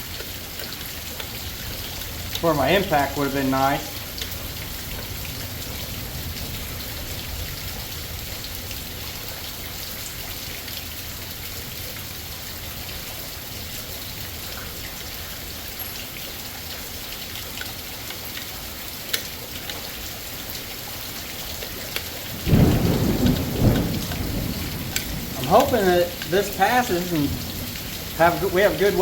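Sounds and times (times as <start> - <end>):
heavy rain: 0.0 - 29.0
thunder rumbling: 1.6 - 8.7, 22.2 - 29.0.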